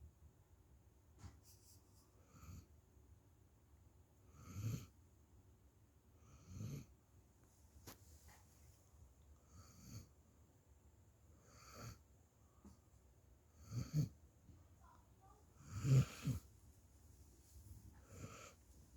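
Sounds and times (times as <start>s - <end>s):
puppy snoring: 4.3s - 5.0s, 6.2s - 6.9s, 9.4s - 10.1s, 11.4s - 12.0s, 13.6s - 14.2s, 15.6s - 16.5s, 18.0s - 18.6s.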